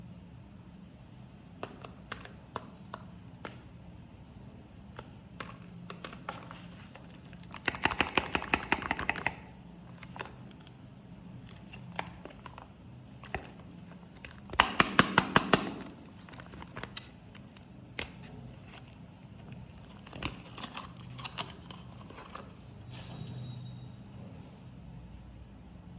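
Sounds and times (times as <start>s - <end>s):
packaging clicks and taps: 1.6s - 3.6s, 4.9s - 10.8s, 11.4s - 22.5s.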